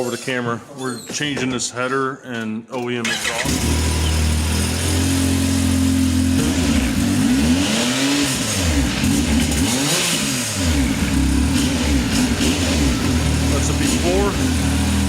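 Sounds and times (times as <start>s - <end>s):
motorcycle engine idling and revving: 3.1s - 15.0s.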